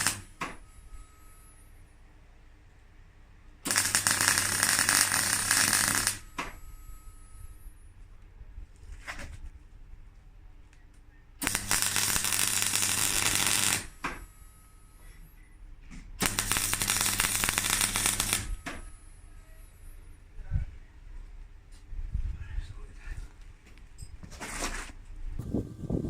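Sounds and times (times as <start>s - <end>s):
arc welding crackle: 0.0s - 0.4s, 3.6s - 6.3s, 11.4s - 14.2s, 16.2s - 18.7s
low electrical hum: 0.0s - 26.0s.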